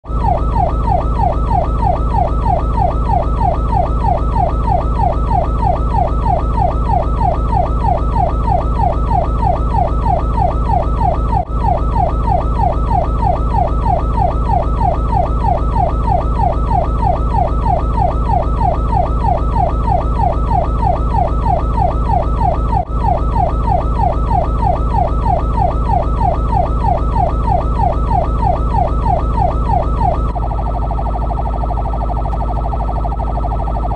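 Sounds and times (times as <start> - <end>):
electronic siren yelping: 0.1 - 33.9
steady low rumble: 11.2 - 33.9.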